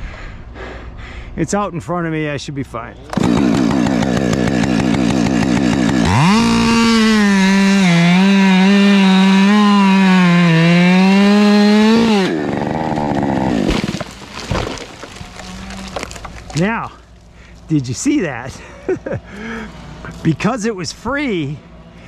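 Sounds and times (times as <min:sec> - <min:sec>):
chainsaw cutting wood: 0:03.1 - 0:16.7.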